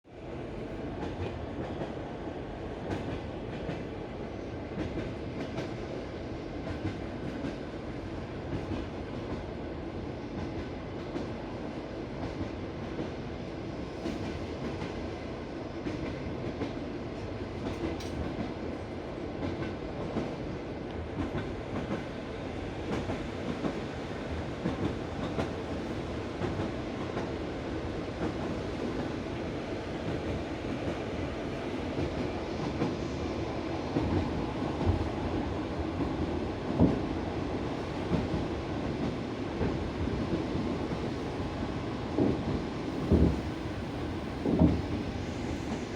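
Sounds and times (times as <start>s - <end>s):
train wheels clickety-clack: 0.3s - 45.9s
train running gear rumble: 15.8s - 45.9s.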